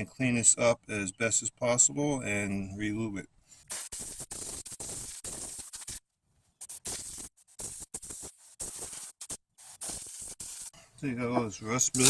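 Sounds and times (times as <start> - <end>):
hissing and scraping on metal: 3.5 - 6.0, 6.6 - 11.0, 11.6 - 12.0.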